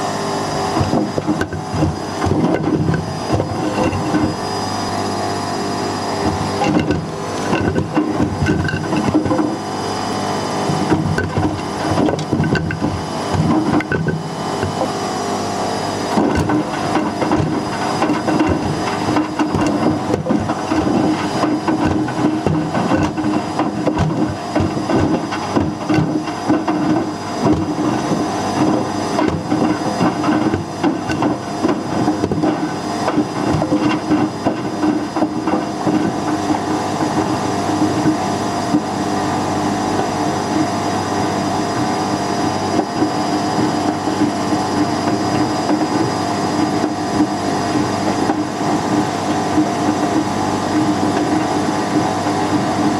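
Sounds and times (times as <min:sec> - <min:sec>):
washing machine motor hum: 0:00.0 - 0:52.9
objects rattling in washing machine drum: 0:06.2 - 0:09.6, 0:10.7 - 0:15.0, 0:16.2 - 0:38.2.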